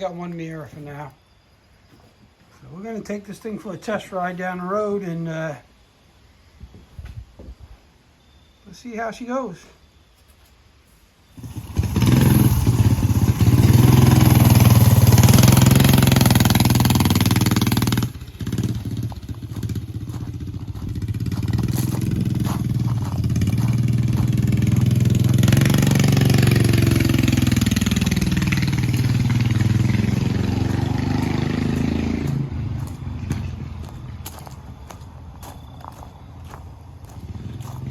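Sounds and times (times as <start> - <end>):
mini bike engine running: 11.4 - 34.0, 35.9 - 37.9.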